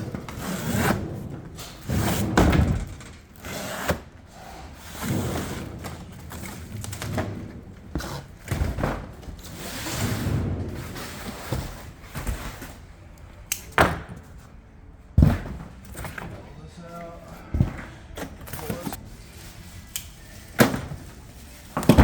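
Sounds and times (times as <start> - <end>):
hard parts knocking and thudding: 0.0 - 4.2, 15.2 - 16.5.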